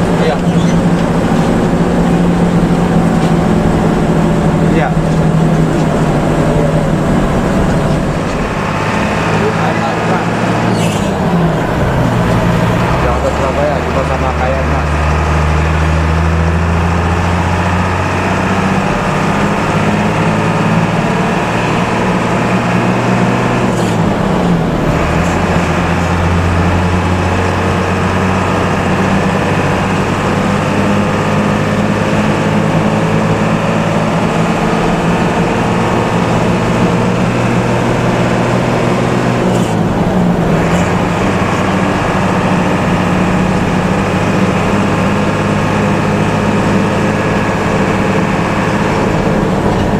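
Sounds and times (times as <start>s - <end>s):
bus engine drone: 0.0s - 49.9s.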